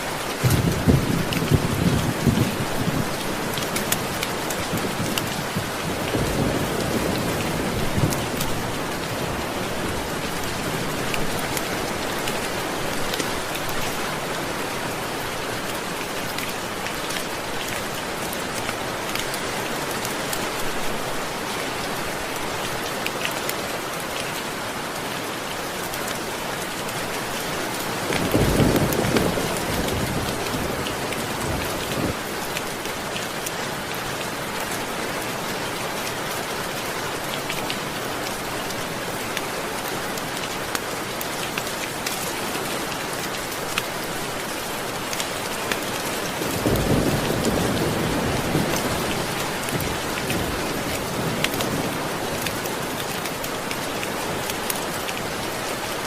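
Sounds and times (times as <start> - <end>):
rain falling: 0.0 - 56.0
thunder rumbling: 0.4 - 3.2.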